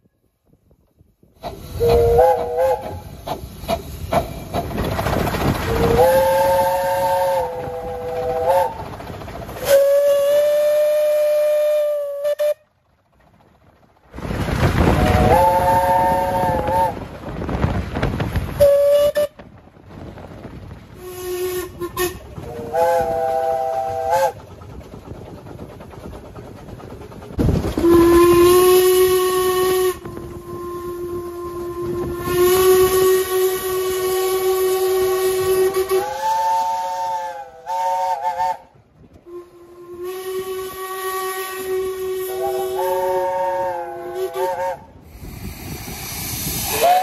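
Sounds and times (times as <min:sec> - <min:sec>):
steam hissing: 0:01.3 - 0:12.6, 0:21.0 - 0:38.6, 0:39.6 - 0:47.0
steam locomotive whistle blasts: 0:01.4 - 0:03.4, 0:05.7 - 0:08.8, 0:09.6 - 0:12.7, 0:15.0 - 0:17.0, 0:18.6 - 0:19.4, 0:21.0 - 0:24.4, 0:27.8 - 0:45.2, 0:46.6 - 0:47.0.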